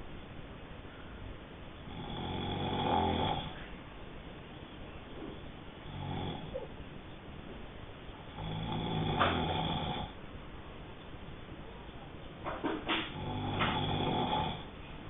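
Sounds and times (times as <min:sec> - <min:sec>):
person snoring: 0:01.9 - 0:03.6, 0:05.8 - 0:06.7, 0:08.3 - 0:10.2, 0:13.1 - 0:14.7.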